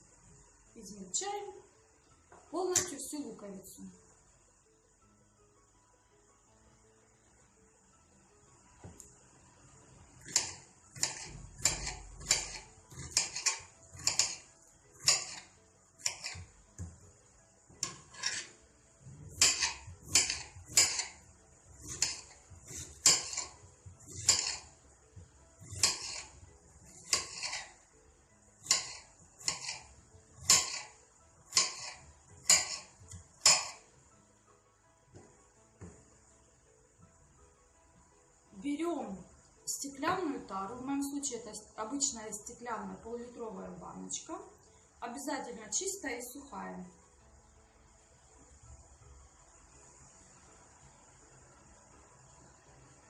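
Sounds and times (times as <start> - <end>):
knife chopping onion on board: 10.2 - 14.4, 15.0 - 16.9, 19.3 - 21.2, 21.8 - 24.7, 25.6 - 27.6, 28.6 - 30.9, 31.5 - 33.8.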